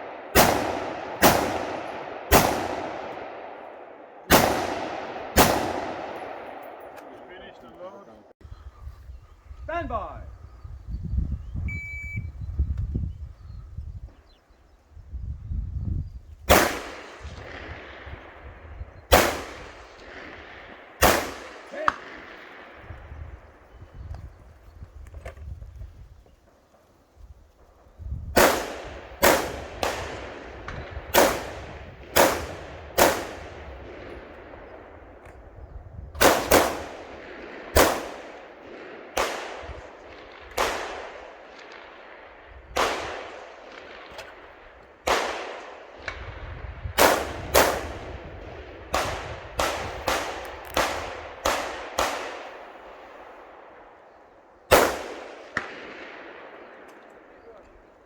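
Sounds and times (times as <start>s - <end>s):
rifle shots with ringing echo: 0.0s - 8.2s, 16.5s - 24.3s, 28.3s - 58.0s.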